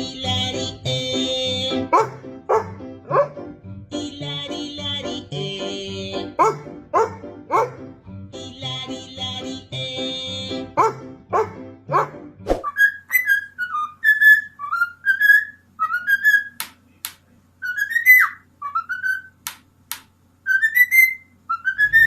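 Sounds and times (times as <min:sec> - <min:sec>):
music: 0:00.0 - 0:12.6
sharp clicks: 0:16.5 - 0:17.3, 0:19.4 - 0:20.1
dog whining: 0:20.5 - 0:22.0.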